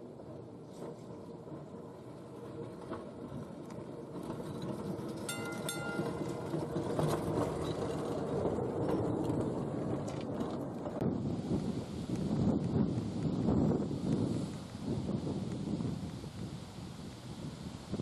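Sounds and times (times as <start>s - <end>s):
tram rumbling on rails: 0.0s - 18.0s
brief ringing tone: 5.3s - 6.2s.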